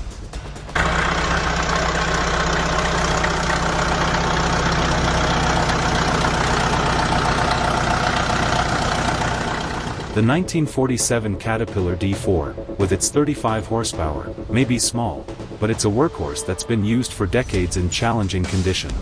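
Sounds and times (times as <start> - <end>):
diesel engine running: 0.7 - 10.4.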